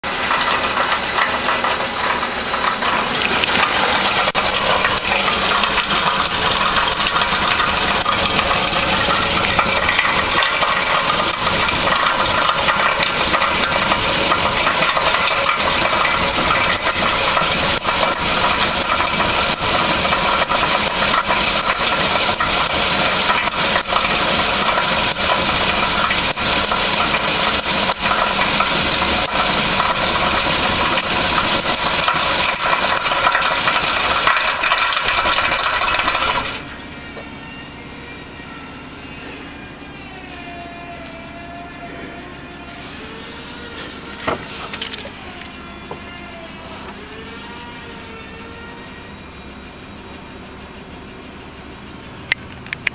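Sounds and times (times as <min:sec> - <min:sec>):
metallic knocking and rattling: 0:00.0 - 0:36.7
car engine running: 0:00.0 - 0:37.0.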